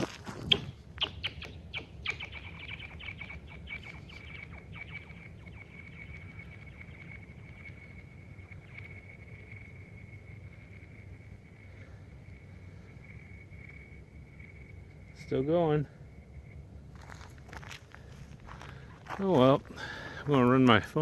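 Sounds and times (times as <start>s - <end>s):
ice ringing high-pitched tone: 2.6s - 11.5s.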